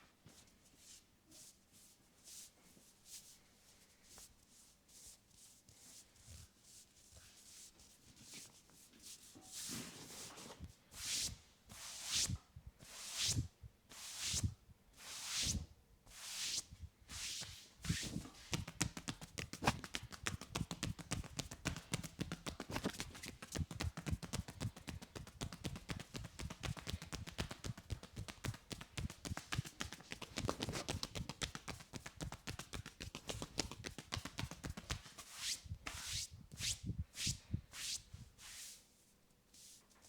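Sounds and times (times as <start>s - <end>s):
hands rubbing hair: 16.2s - 38.8s.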